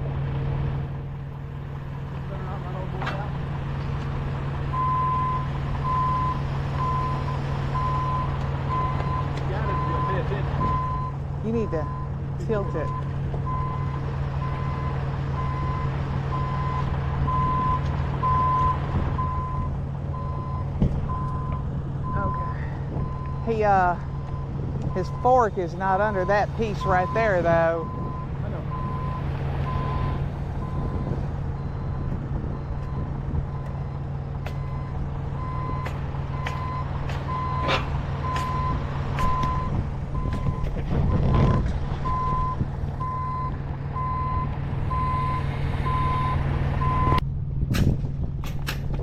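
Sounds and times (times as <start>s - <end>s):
engine low hum: 0.0s - 49.0s
backup alarm beeping: 4.7s - 40.7s
sharp clicks and knocks: 47.7s - 49.0s.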